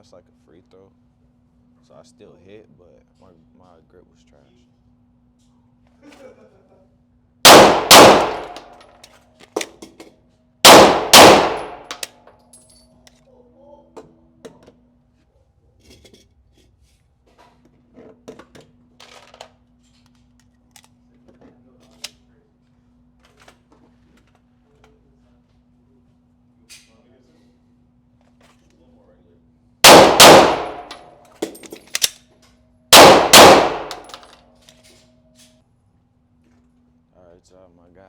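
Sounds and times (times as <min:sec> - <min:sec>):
pistol shots ringing indoors: 0:07.5 - 0:09.8, 0:10.6 - 0:12.2, 0:29.8 - 0:32.2, 0:32.9 - 0:34.4.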